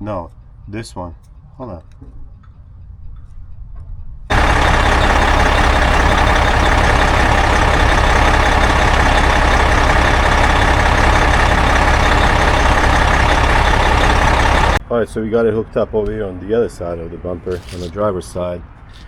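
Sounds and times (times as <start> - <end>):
truck diesel engine running: 4.3 - 14.8.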